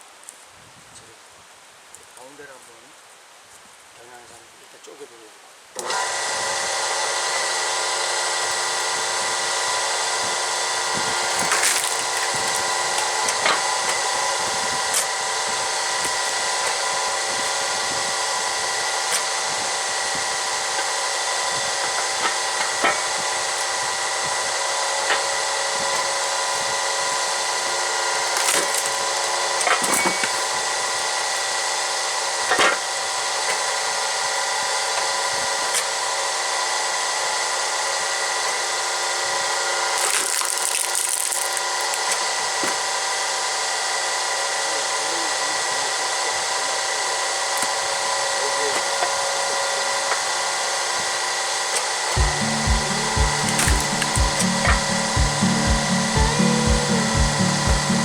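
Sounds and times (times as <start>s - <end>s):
hydraulic log splitter droning: 5.8s - 58.0s
log cracking and splintering: 11.3s - 12.6s, 28.3s - 29.2s, 39.9s - 42.1s.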